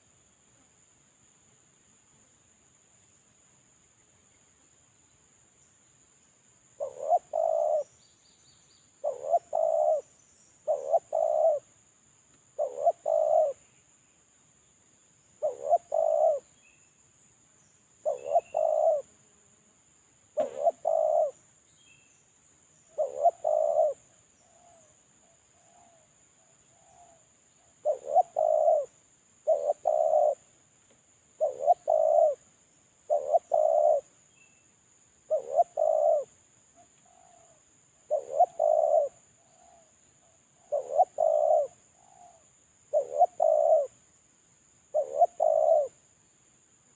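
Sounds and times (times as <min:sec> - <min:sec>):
dove cooing: 0:06.8 - 0:07.9, 0:09.0 - 0:11.7, 0:12.6 - 0:13.6, 0:15.4 - 0:16.4, 0:18.0 - 0:19.1, 0:20.4 - 0:21.4, 0:22.9 - 0:24.9, 0:27.8 - 0:30.5, 0:31.4 - 0:32.4, 0:33.1 - 0:34.1, 0:35.3 - 0:36.3, 0:37.0 - 0:39.9, 0:40.6 - 0:44.0, 0:44.9 - 0:46.0.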